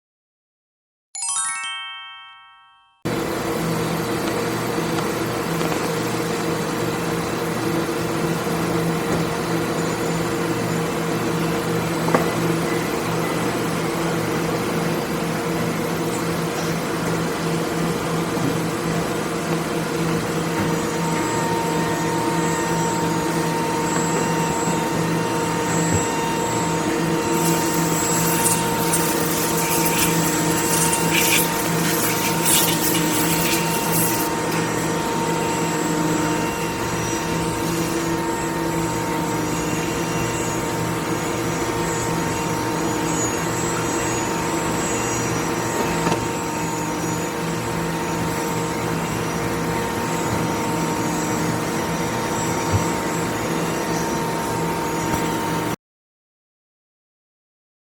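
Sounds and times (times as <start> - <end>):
machine tool motor hum: 19.5 - 39.0
high hissing with clicks: 27.3 - 34.7.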